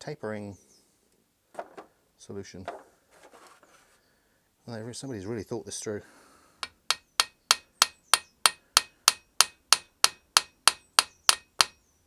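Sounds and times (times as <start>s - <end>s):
hammer striking steel: 6.6s - 11.8s.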